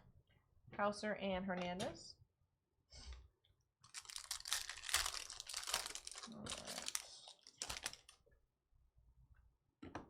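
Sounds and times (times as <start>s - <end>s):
foil wrapper tearing and crinkling: 3.8s - 8.2s.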